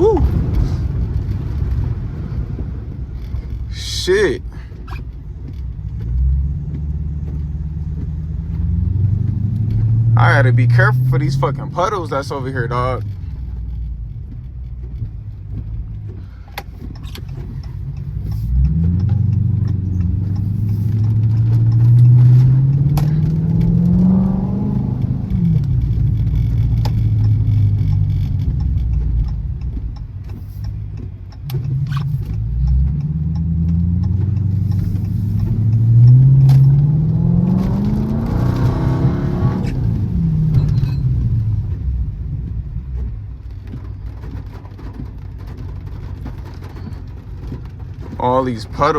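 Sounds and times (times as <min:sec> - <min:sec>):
car engine accelerating hard: 0:00.0 - 0:48.9.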